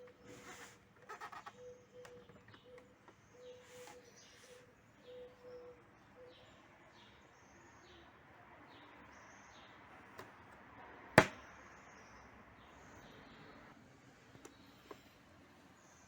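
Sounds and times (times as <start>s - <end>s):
faint bird chirps: 0.0s - 8.1s.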